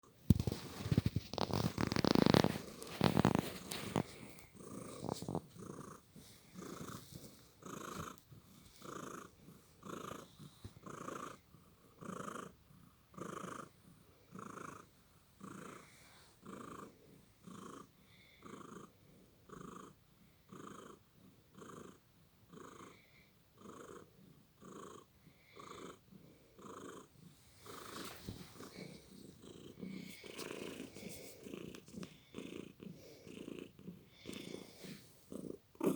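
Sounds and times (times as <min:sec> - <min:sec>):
rustling: 0:00.1 - 0:11.1, 0:27.3 - 0:32.6
cat breathing: 0:27.5 - 0:35.5.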